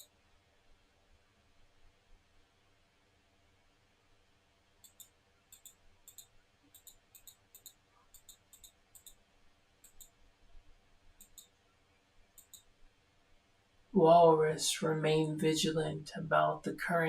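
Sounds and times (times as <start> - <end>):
faint sharp clicks in pairs: 4.8 - 9.2, 9.8 - 10.2, 11.2 - 11.6, 12.3 - 12.7.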